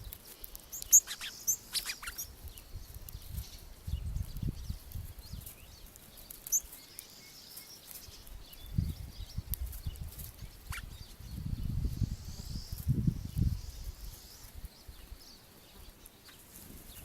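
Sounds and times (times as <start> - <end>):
songbirds chirping: 0.0 - 17.0
wind rumble on microphone: 2.2 - 5.9, 8.0 - 15.9.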